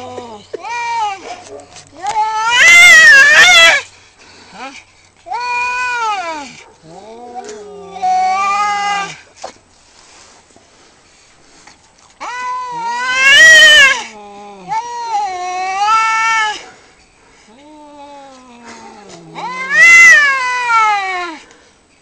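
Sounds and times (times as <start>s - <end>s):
cats caterwauling: 0.0s - 3.9s, 5.3s - 9.2s, 12.2s - 16.8s, 17.5s - 21.4s.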